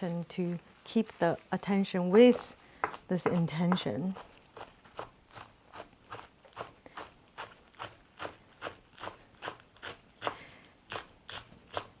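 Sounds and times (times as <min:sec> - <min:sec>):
knife chopping greens on board: 0:02.1 - 0:04.7, 0:05.3 - 0:11.9.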